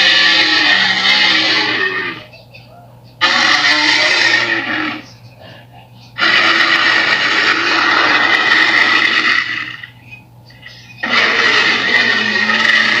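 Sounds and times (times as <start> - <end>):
dinosaur roar: 0.0 - 2.2, 3.2 - 5.0, 6.2 - 9.9, 11.0 - 13.0.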